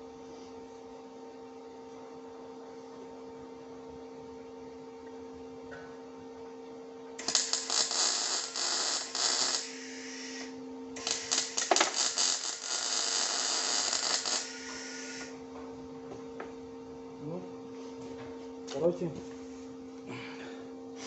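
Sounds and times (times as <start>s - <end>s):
welding arc crackling and popping: 7.2s - 15.3s
welder humming: 7.2s - 15.6s.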